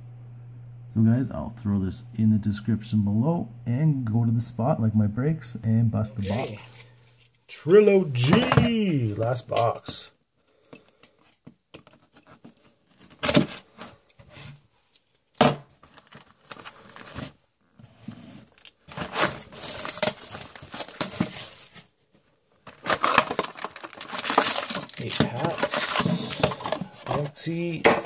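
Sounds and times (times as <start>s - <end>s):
cardboard rustling: 11.2s - 28.0s
plastic wrap tearing and crinkling: 15.8s - 17.4s, 18.4s - 22.0s, 22.6s - 27.7s.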